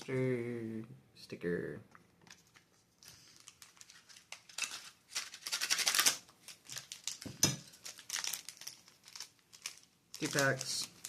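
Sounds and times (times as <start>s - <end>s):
packaging rustling and crinkling: 2.2s - 11.0s.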